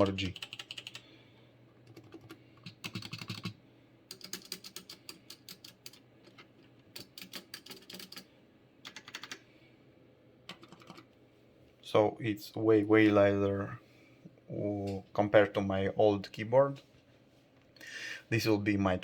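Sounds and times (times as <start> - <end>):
mechanical keyboard typing: 0.0 - 1.0, 1.8 - 9.4, 10.5 - 11.0.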